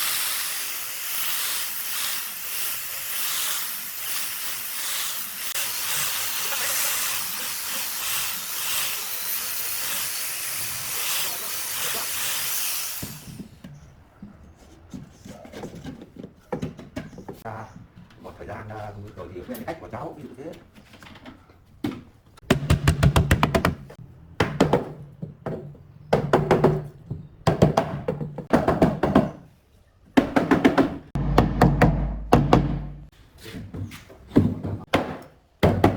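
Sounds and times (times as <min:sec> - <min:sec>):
compressed air hissing: 0:00.0 - 0:13.5.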